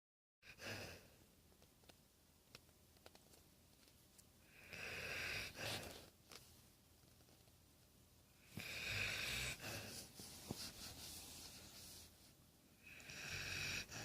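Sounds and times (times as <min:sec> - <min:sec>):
dog snoring: 0:04.5 - 0:06.0, 0:08.4 - 0:10.1, 0:12.8 - 0:14.0.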